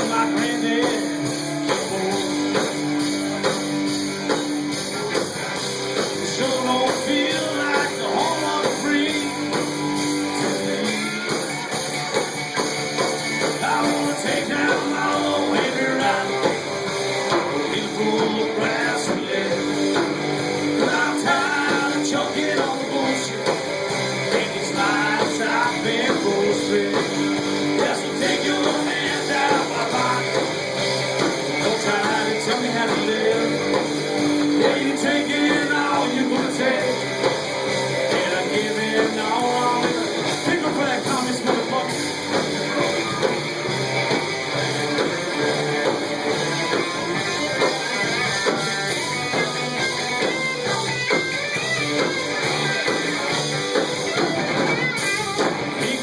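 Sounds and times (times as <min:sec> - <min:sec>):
person singing: 0:00.0 - 0:02.6, 0:06.2 - 0:09.6, 0:10.2 - 0:11.4, 0:13.5 - 0:16.7, 0:17.4 - 0:20.0, 0:20.7 - 0:23.5, 0:24.2 - 0:30.6, 0:31.5 - 0:33.8, 0:34.5 - 0:37.2, 0:38.1 - 0:42.0, 0:55.6 - 0:56.0
rock and roll band playing: 0:00.0 - 0:56.0.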